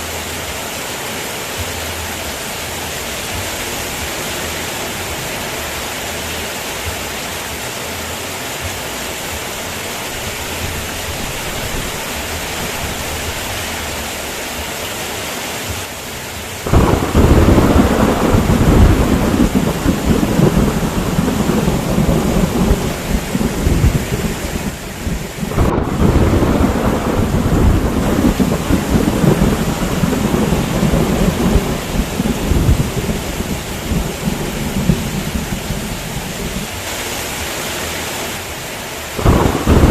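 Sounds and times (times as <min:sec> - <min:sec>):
heavy rain: 0:00.0 - 0:39.9
deep thunder rumble: 0:16.6 - 0:36.8, 0:39.2 - 0:39.9.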